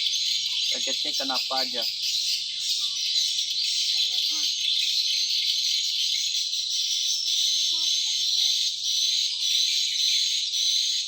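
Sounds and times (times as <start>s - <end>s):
insects buzzing: 0.0s - 4.9s.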